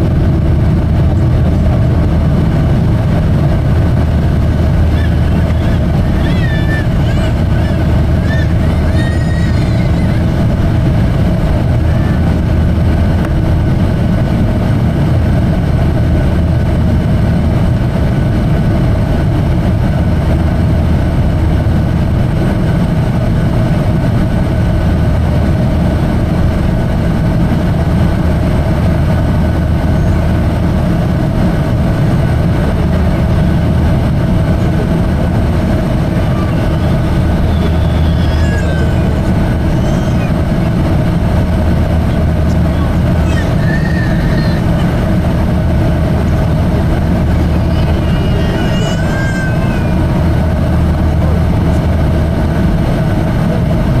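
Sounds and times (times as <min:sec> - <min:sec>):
rushing air: 0:00.0 - 0:18.0
jet engines droning: 0:00.0 - 0:54.0.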